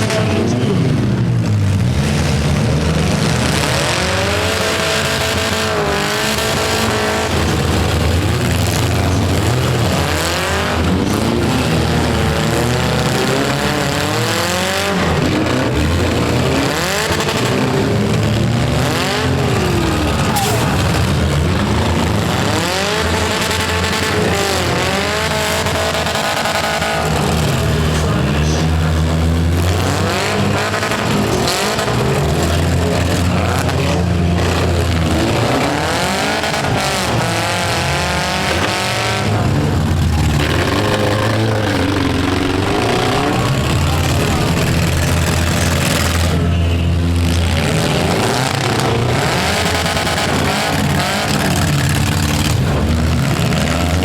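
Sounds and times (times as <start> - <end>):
car engines revving: 0.0 - 54.0.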